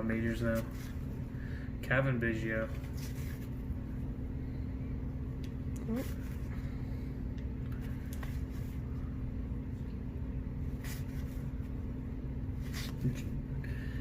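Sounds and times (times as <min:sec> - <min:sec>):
steady low room hum: 0:00.0 - 0:14.0
cards being flipped: 0:07.7 - 0:08.8, 0:10.7 - 0:11.7, 0:12.6 - 0:13.4.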